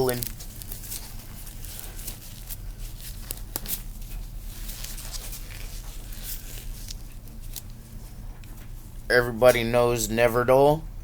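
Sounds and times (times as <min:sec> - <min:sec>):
scratchy rustling and scraping: 0:00.0 - 0:08.5
steady low hum: 0:00.0 - 0:11.0.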